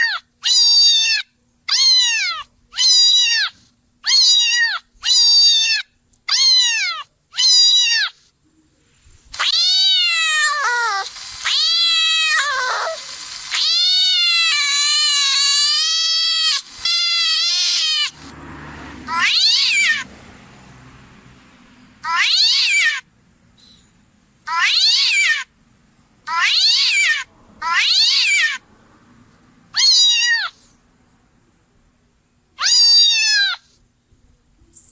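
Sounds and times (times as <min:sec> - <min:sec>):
cat meowing: 0:00.0 - 0:08.2, 0:09.4 - 0:18.3, 0:19.1 - 0:20.1, 0:22.0 - 0:23.1, 0:24.5 - 0:25.5, 0:26.3 - 0:28.6, 0:29.7 - 0:30.7, 0:32.6 - 0:33.8.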